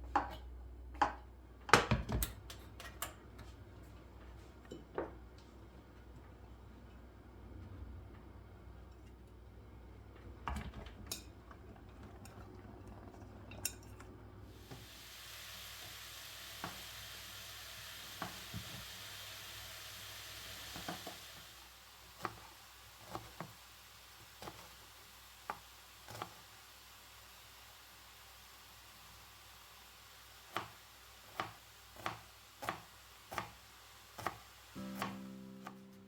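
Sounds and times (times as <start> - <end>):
steady high hiss: 14.6 - 22.8.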